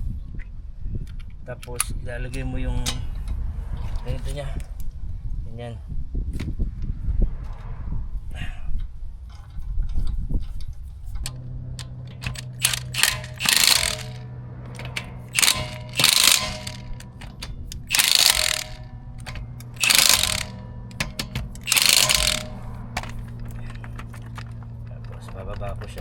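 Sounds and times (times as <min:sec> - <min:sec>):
steady low hum: 0:10.9 - 0:24.9
ratchet wrench ratcheting: 0:11.8 - 0:14.2, 0:14.8 - 0:23.3.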